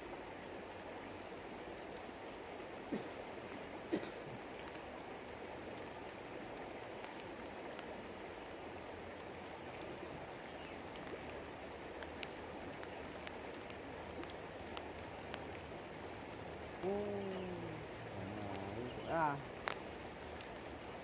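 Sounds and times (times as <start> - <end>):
river water flowing: 0.0 - 21.0
faint ticks: 4.0 - 8.0, 8.8 - 21.0.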